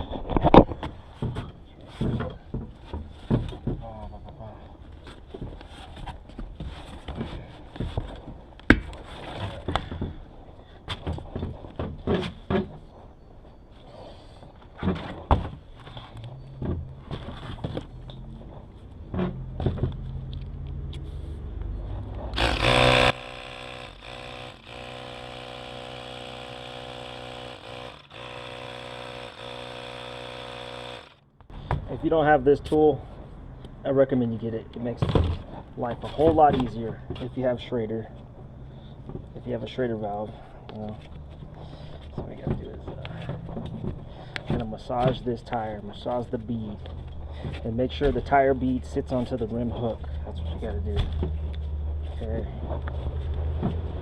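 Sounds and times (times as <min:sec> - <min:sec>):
air compressor running: 0:22.3 - 0:31.2.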